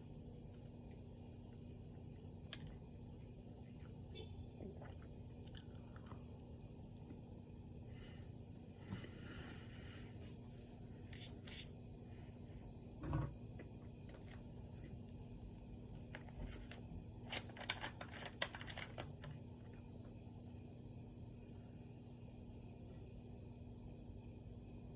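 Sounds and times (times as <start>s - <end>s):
person chewing a sandwich: 4.6s - 7.2s.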